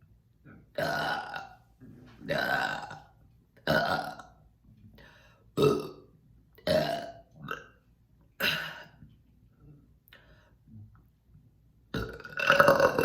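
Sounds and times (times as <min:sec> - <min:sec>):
woman burping: 0:05.6 - 0:06.0, 0:06.7 - 0:07.7, 0:08.4 - 0:09.0, 0:12.0 - 0:13.0.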